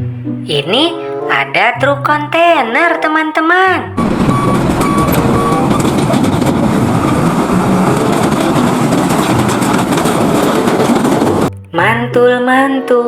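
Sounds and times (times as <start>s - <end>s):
heavy truck driving at speed: 4.0s - 11.5s.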